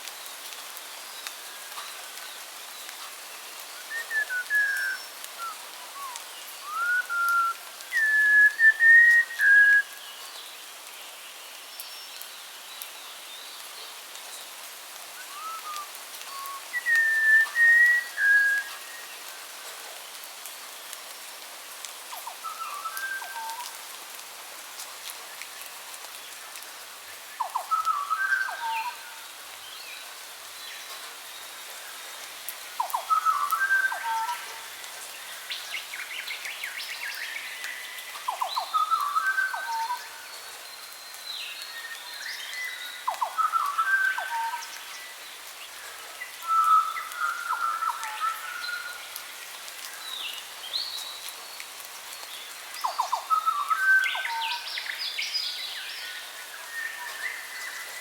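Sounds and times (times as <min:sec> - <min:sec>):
songbirds singing: 0:25.6 - 0:58.0.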